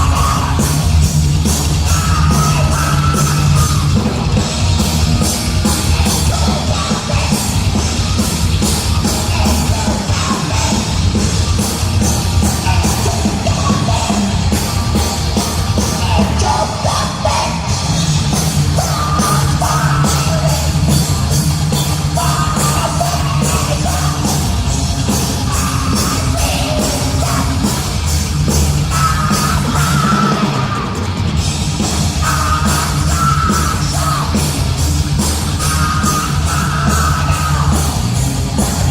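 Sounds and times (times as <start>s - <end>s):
fast dense drumming: 0.0s - 38.9s
heavy metal band playing: 0.0s - 38.9s
shouted vocals: 1.8s - 4.3s, 15.8s - 17.9s, 28.8s - 31.1s, 32.1s - 34.7s, 35.4s - 38.9s.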